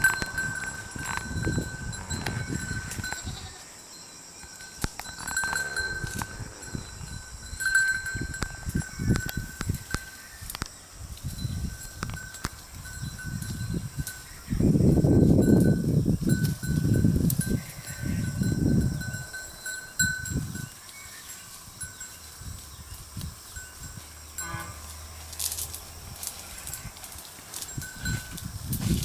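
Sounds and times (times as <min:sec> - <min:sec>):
livestock bell ringing: 0:00.0 - 0:10.2, 0:15.2 - 0:22.4, 0:23.5 - 0:25.2, 0:26.5 - 0:28.5
low rumbling noise: 0:05.2 - 0:08.9.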